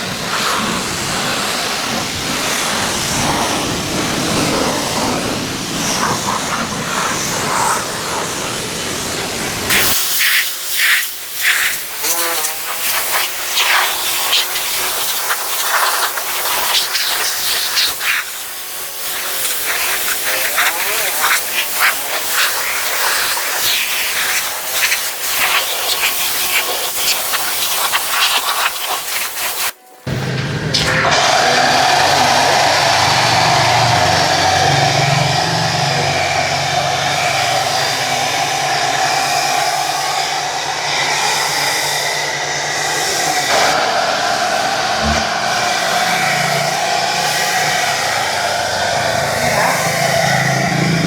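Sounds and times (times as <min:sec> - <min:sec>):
spray jet hissing: 0:09.6 - 0:34.0.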